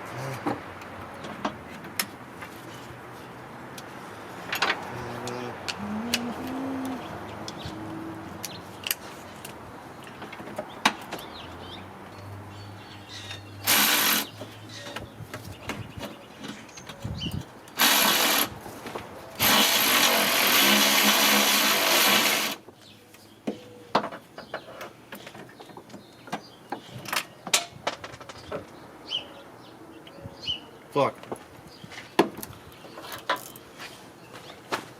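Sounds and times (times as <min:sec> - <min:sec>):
power tool running: 0:13.6 - 0:14.3, 0:17.8 - 0:18.5, 0:19.4 - 0:22.6.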